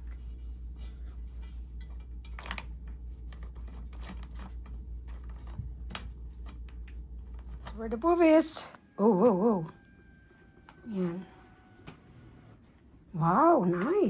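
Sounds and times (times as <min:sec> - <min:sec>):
handling clicks and scratching: 0:00.0 - 0:08.2
steady low hum: 0:00.0 - 0:14.0.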